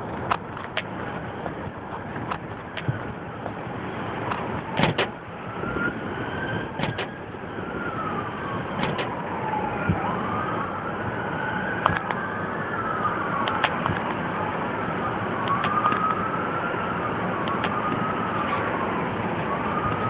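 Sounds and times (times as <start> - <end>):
siren wailing: 1.0 - 20.0
sharp clicks: 13.4 - 14.2, 17.4 - 18.0.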